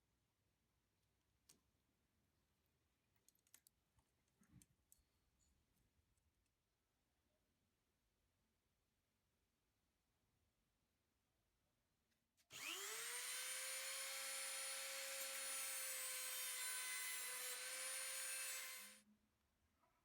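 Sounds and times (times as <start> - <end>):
small electric motor whining: 12.5 - 19.0.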